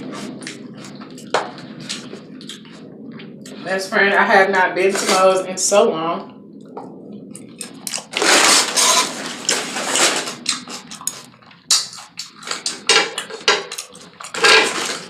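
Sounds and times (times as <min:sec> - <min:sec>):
crunching and chewing food: 0:00.0 - 0:03.6, 0:06.8 - 0:15.0.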